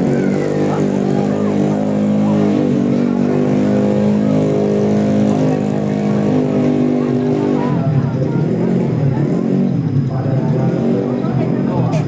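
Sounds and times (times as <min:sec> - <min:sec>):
scooter engine revving loud: 0:00.0 - 0:12.0.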